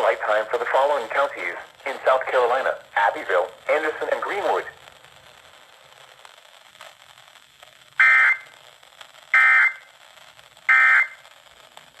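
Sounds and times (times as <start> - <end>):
faint broadcast hiss: 0.0 - 12.0.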